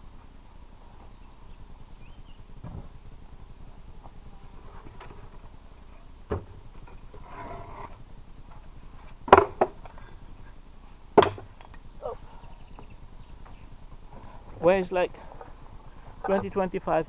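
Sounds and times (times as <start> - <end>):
wooden boxes knocking: 9.3 - 9.8, 11.2 - 11.5.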